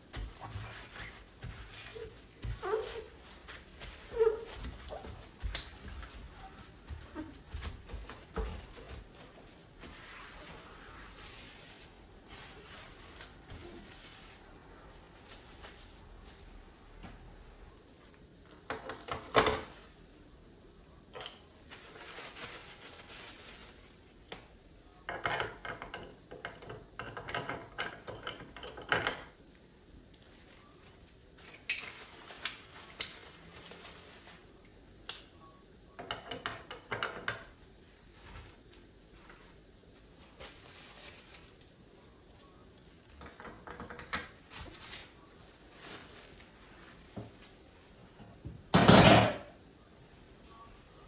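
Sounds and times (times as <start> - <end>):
dishes and cutlery clattering: 31.5 - 32.4, 48.8 - 49.5.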